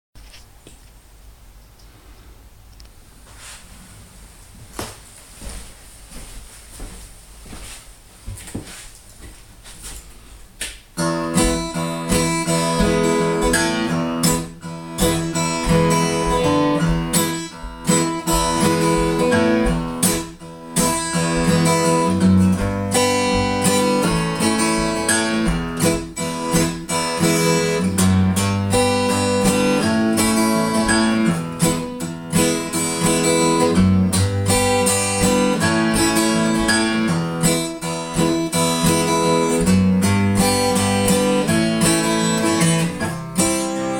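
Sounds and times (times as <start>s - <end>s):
strummed acoustic guitar: 11.0s - 43.9s.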